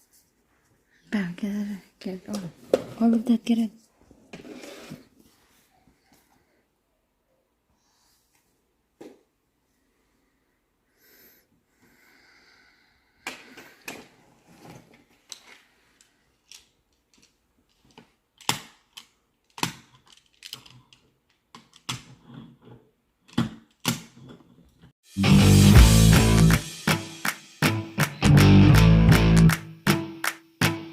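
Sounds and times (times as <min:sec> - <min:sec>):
plastic tiles clacking: 0:16.4 - 0:22.2
loud guitar music: 0:25.1 - 0:30.9.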